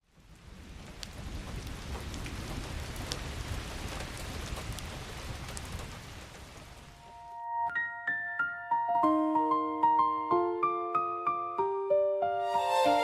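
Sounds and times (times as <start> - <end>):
steady rain patter: 0.0 - 7.2.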